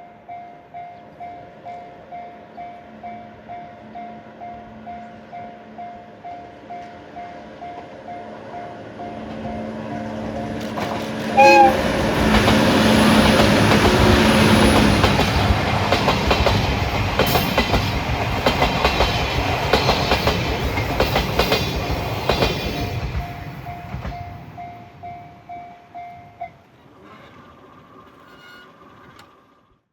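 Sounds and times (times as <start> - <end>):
train wheels clacking over rail joints: 10.2 - 24.4
train horn blast: 11.2 - 15.0.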